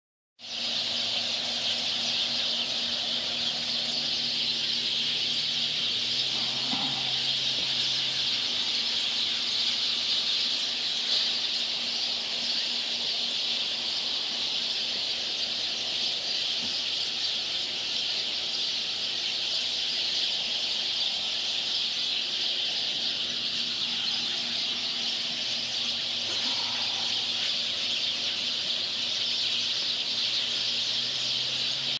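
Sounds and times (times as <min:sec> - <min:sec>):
birds chirping: 0:00.4 - 0:31.9.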